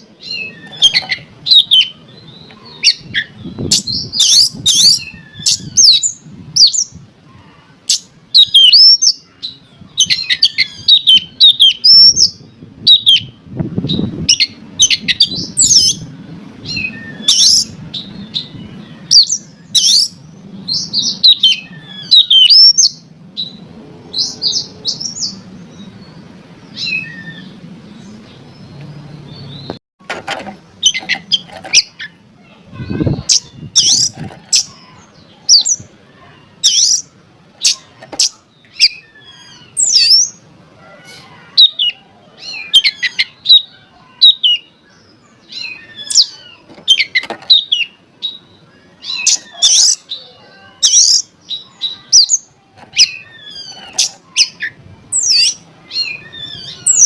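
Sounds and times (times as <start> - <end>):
bird singing whistles and chirps: 0.0 - 7.0, 7.9 - 16.0, 16.6 - 23.6, 26.7 - 27.6, 36.6 - 40.4, 41.6 - 50.2, 50.8 - 57.0.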